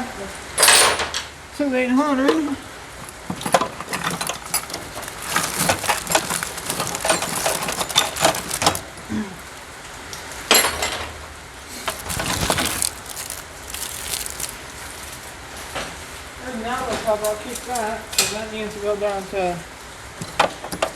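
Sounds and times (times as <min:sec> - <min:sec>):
tools rattling in toolbox: 0:03.8 - 0:08.8, 0:11.9 - 0:15.2.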